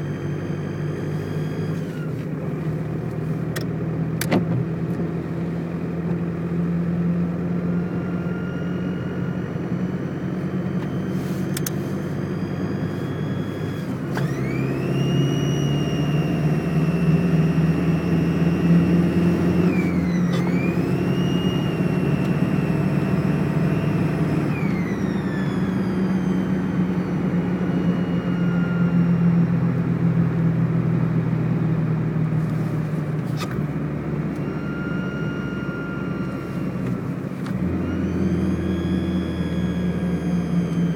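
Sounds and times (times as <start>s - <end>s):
high engine whistle: 0.0s - 2.3s, 6.4s - 30.2s, 32.4s - 40.9s
diesel engine running: 0.0s - 40.9s.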